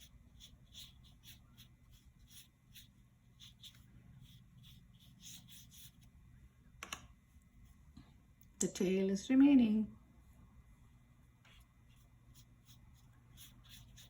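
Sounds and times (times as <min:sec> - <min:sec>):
brush rubbing on paper: 0:00.0 - 0:06.1, 0:11.5 - 0:14.0.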